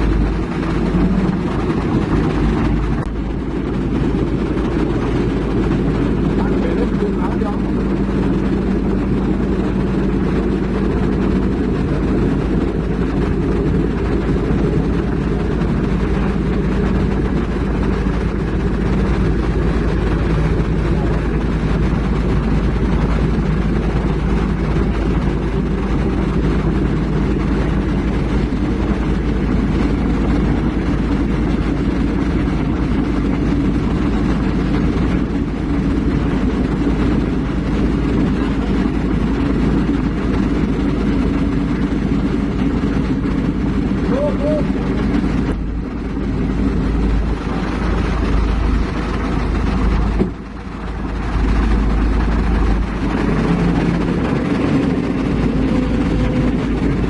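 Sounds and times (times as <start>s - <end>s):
heavy diesel engine rumbling: 0.0s - 57.0s.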